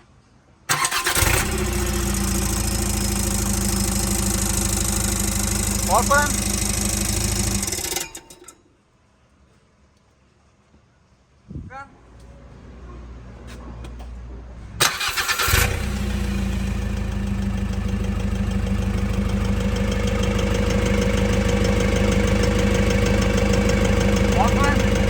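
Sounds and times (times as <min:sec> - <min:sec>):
engine idling with ticking: 0:00.7 - 0:08.4, 0:14.8 - 0:25.0
starter motor cranking: 0:00.7 - 0:08.6, 0:14.8 - 0:25.0.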